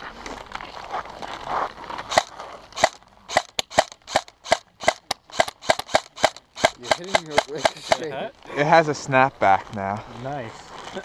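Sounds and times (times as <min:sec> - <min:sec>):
airsoft gun shots: 0:02.1 - 0:08.1.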